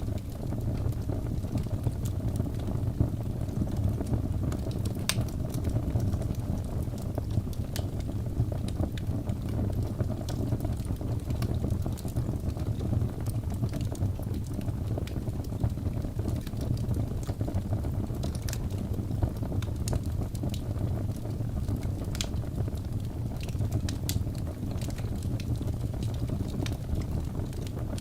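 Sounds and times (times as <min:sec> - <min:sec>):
wood fire crackling: 0:00.0 - 0:28.0.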